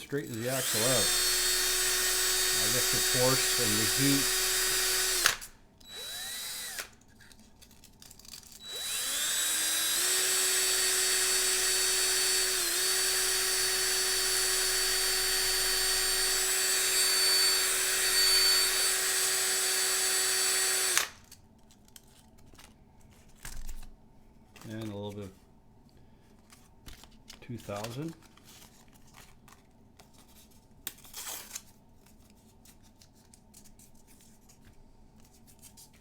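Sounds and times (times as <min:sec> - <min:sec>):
power drill spinning: 0:00.0 - 0:07.0, 0:08.6 - 0:21.2.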